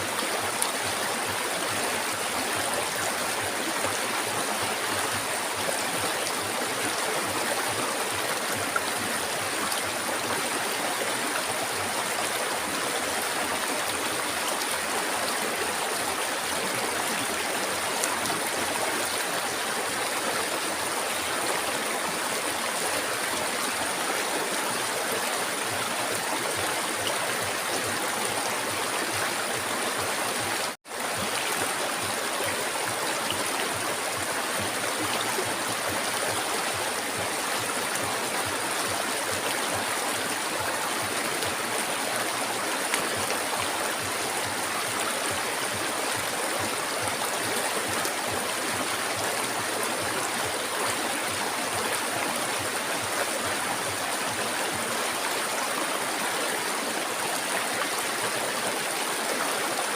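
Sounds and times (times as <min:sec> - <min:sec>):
river water rushing and gurgling: 0:00.0 - 0:59.9.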